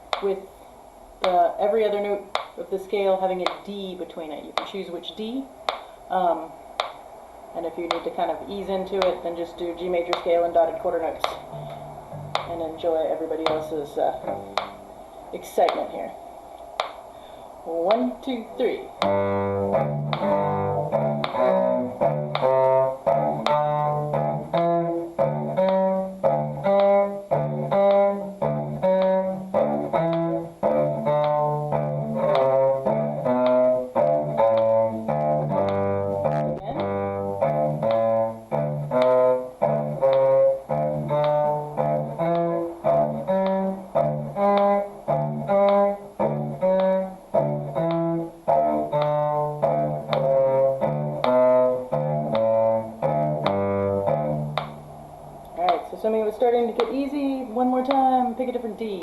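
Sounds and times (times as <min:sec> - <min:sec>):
metronome clicking: 0:00.0 - 0:00.4, 0:01.2 - 0:07.0, 0:07.6 - 0:17.0, 0:17.7 - 0:59.0
bowed string instrument scale: 0:07.6 - 0:15.0, 0:17.7 - 0:55.0.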